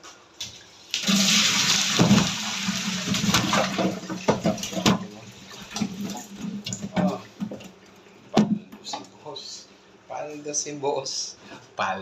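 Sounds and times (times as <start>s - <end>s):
water gushing and splashing: 1.0s - 6.8s.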